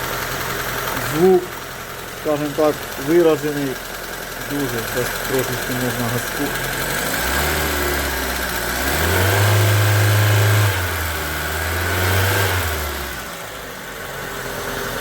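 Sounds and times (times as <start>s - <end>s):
car engine idling and revving: 0.0s - 15.0s.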